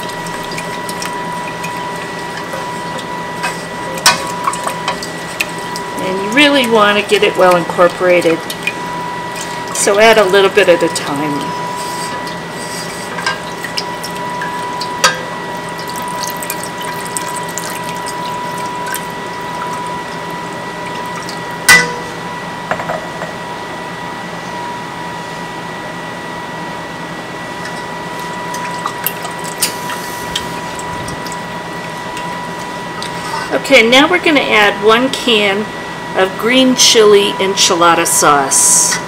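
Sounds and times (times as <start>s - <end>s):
whisk stirring and sizzling: 0.0s - 21.8s, 27.5s - 33.5s
steady high hum: 0.0s - 39.0s.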